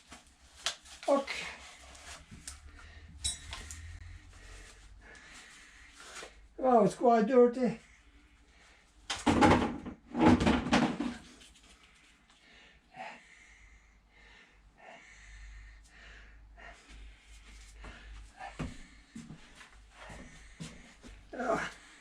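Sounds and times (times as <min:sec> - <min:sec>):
rustling and scraping noises: 0:00.0 - 0:06.4, 0:10.2 - 0:12.3.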